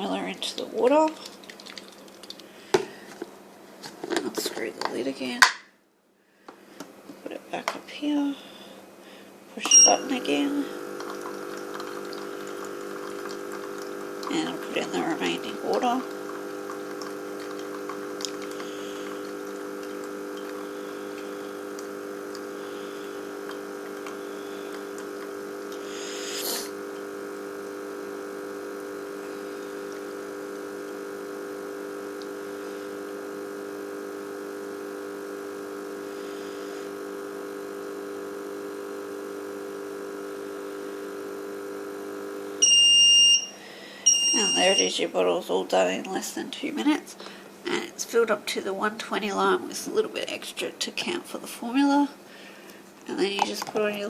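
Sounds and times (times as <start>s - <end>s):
formula machine humming: 9.6s - 45.0s
loud high machine beep: 9.7s - 10.1s, 42.6s - 44.9s.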